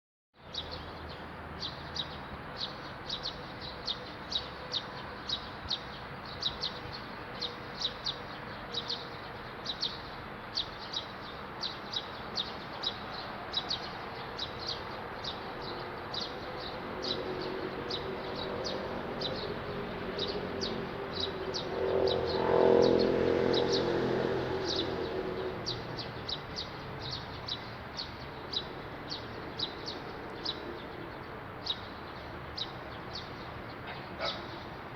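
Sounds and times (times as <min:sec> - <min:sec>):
vehicle passing: 0:15.7 - 0:31.6.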